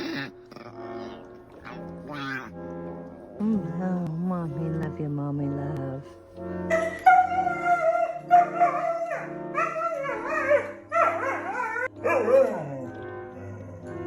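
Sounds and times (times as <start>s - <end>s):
background music with held notes: 0.0s - 14.0s
dog whining and yipping: 6.7s - 12.8s.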